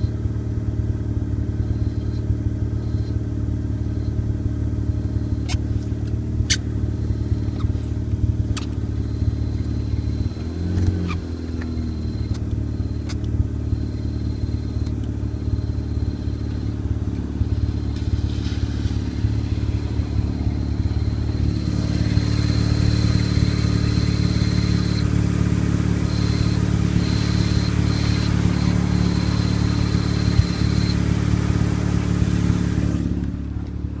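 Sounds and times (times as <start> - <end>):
rotary engine idling: 0.0 - 34.0
high-pitched clutch chirp: 19.3 - 32.2.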